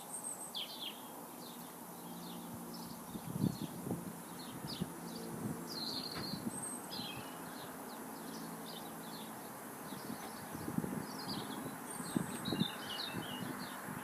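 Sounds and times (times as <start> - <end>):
small birds chirping: 0.0 - 14.0
faint low rustling: 5.9 - 6.8.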